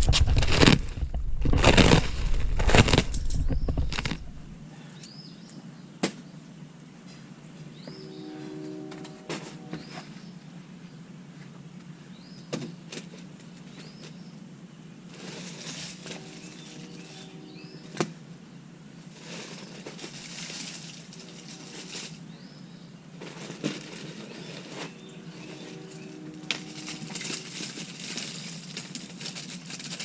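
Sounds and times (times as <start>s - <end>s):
mulch rustling and scraping: 0.0s - 4.6s, 15.1s - 17.7s, 19.0s - 22.3s, 23.2s - 30.0s.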